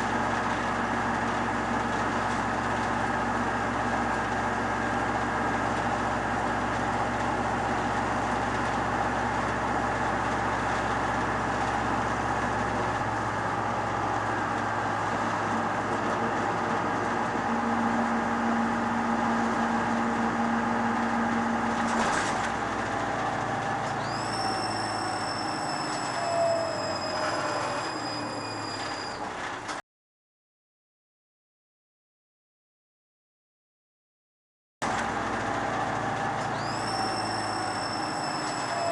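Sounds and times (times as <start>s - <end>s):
diesel truck engine rumbling: 0.0s - 29.8s, 34.8s - 38.9s
high falling whistle: 24.0s - 29.2s, 36.5s - 38.9s.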